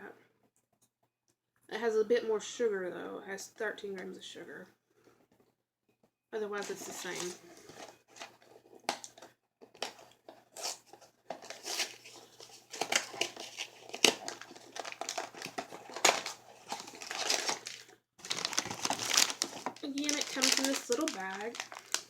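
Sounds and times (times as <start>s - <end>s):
plastic bag crinkling: 6.6s - 8.4s, 11.4s - 22.0s.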